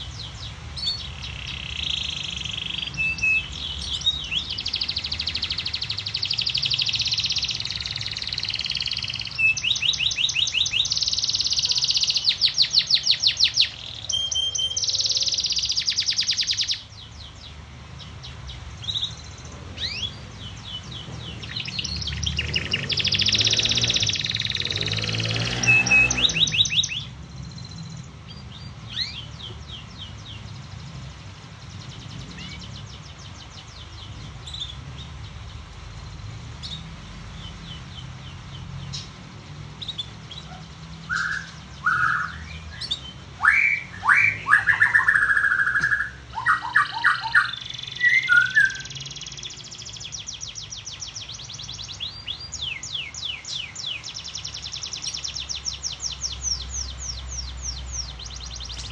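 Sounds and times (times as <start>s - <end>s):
canaries chirping and trilling: 0.0s - 58.9s
lower whistled bird notes: 0.1s - 16.8s, 18.8s - 28.0s, 41.0s - 55.5s.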